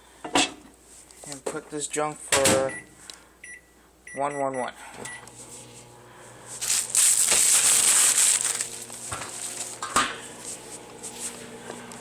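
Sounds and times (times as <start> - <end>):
microwave oven humming: 4.8 - 12.0
loud crinkling rustle: 6.4 - 12.0.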